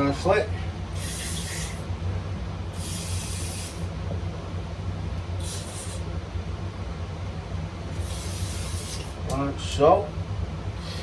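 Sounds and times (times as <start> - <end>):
steady low hum: 0.0 - 11.0
aerosol spray hissing: 1.0 - 1.8, 2.8 - 3.9, 5.4 - 6.0, 8.0 - 9.2.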